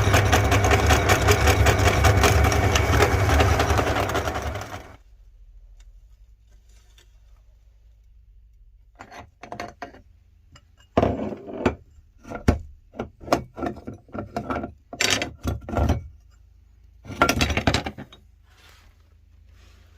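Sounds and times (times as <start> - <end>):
hard objects knocking and scraping: 8.9 - 16.3, 17.0 - 18.3.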